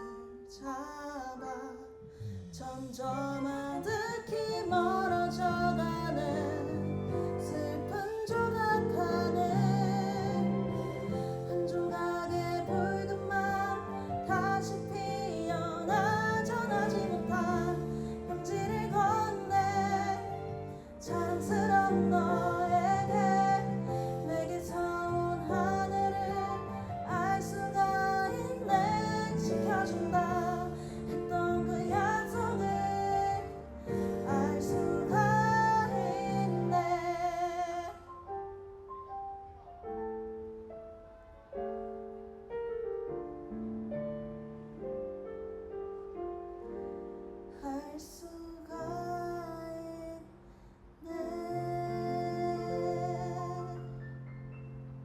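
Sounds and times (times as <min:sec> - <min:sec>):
bass: 0:02.0 - 0:37.8
woman singing with vibrato: 0:02.6 - 0:38.1, 0:51.0 - 0:54.0
keyboard: 0:03.1 - 0:47.7.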